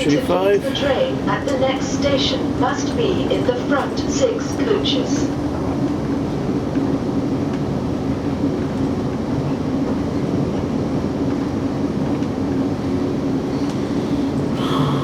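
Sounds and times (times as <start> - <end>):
train interior rumble and hum: 0.0 - 15.0.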